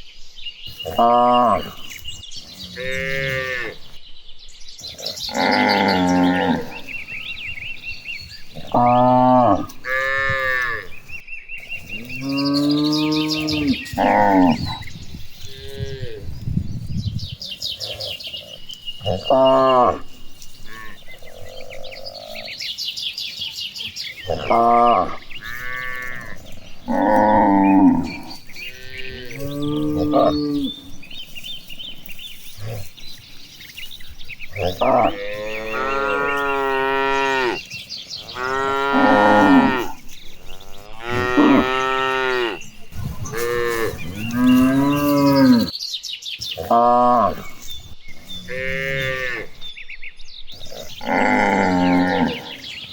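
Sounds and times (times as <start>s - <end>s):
cattle mooing: 2.6s - 3.9s, 5.0s - 7.0s, 8.6s - 11.0s, 12.0s - 16.2s, 17.8s - 22.5s, 24.3s - 31.3s, 34.5s - 37.7s, 38.3s - 45.7s, 50.7s - 52.7s.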